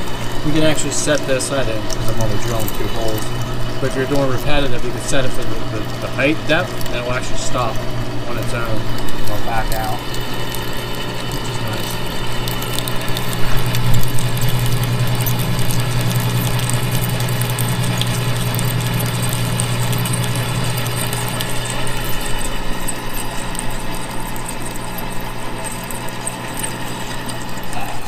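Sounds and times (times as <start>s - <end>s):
drill press motor hum: 0.0s - 28.0s.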